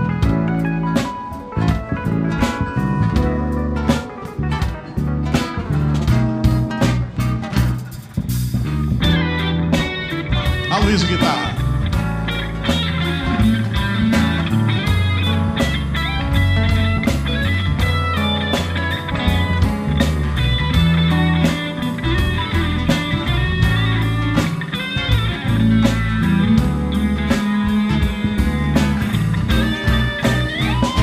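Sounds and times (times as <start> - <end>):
electric guitar solo: 0.0 - 7.5, 8.8 - 31.0
live band playing: 0.0 - 31.0
drum beat: 5.4 - 15.2.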